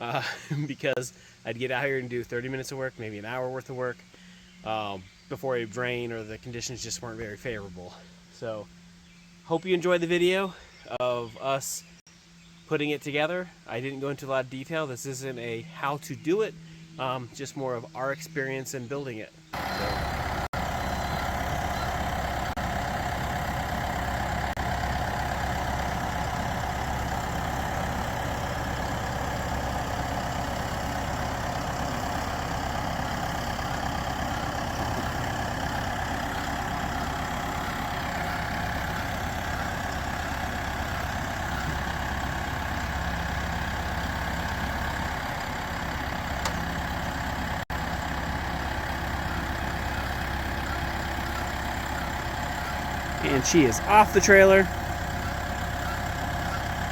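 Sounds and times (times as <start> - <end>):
tractor engine idling: 19.5 - 56.9.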